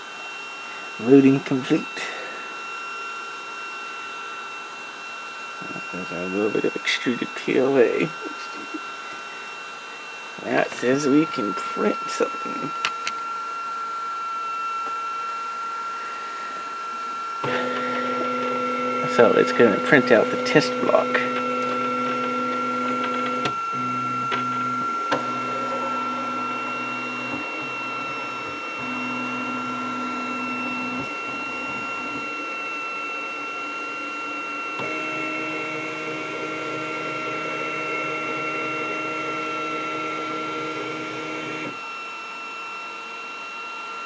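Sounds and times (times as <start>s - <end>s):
printer motors humming: 17.4s - 41.8s
printer fans whining: 17.4s - 41.9s.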